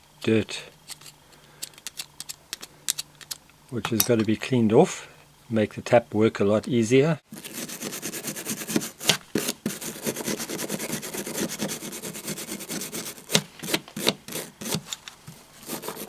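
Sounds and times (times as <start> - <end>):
wire brush scrubbing metal: 7.3 - 15.0, 15.6 - 16.0.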